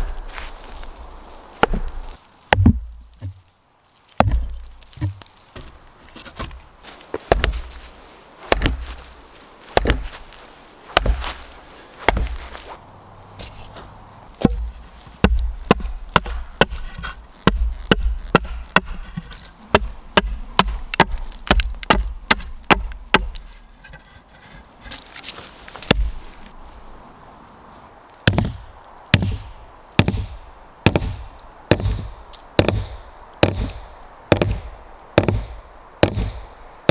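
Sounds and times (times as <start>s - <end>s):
axe chopping wood: 1.6s - 3.4s, 4.2s - 6.6s, 7.3s - 7.8s, 8.4s - 9.1s, 9.7s - 10.2s, 10.9s - 12.6s, 14.4s - 23.5s, 25.8s - 26.1s, 28.2s - 36.9s.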